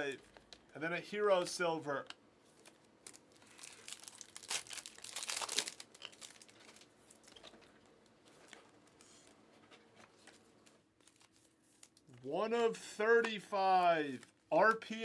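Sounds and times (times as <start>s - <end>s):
wrapper crinkling and tearing: 2.6s - 7.6s, 10.6s - 12.1s
cards being handled: 6.6s - 14.8s.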